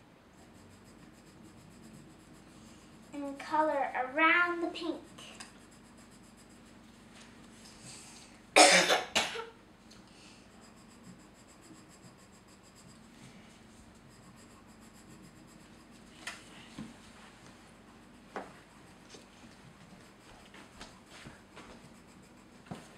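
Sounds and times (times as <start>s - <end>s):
girl coughing: 8.6s - 9.6s.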